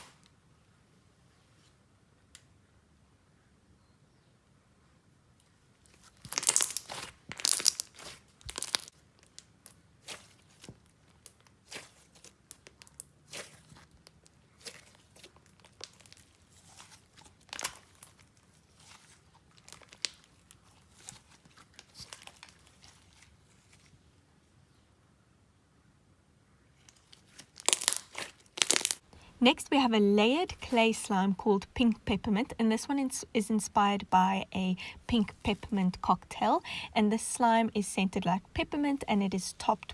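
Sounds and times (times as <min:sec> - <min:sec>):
slime squished crackling pops: 0:06.2 - 0:08.9, 0:17.5 - 0:18.1, 0:27.6 - 0:29.0.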